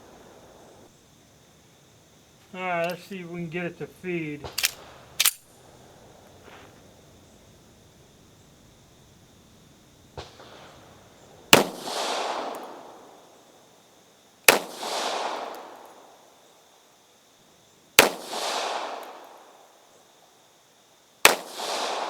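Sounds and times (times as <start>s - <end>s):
pistol shots with echo: 11.5s - 13.0s, 14.5s - 15.8s, 18.0s - 19.3s, 21.3s - 22.0s.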